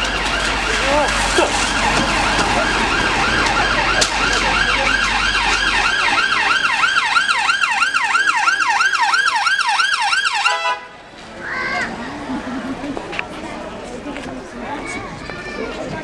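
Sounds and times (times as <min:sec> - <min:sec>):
low rumble: 0:00.0 - 0:08.1
police siren yelp: 0:00.0 - 0:10.7.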